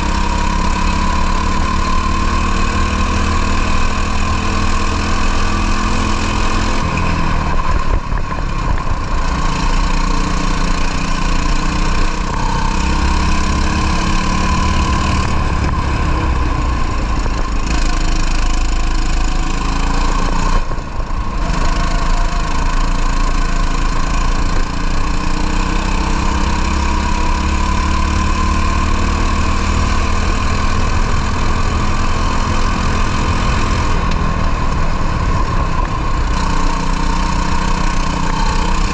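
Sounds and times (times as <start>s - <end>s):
racing kart engine: 0.0s - 38.9s.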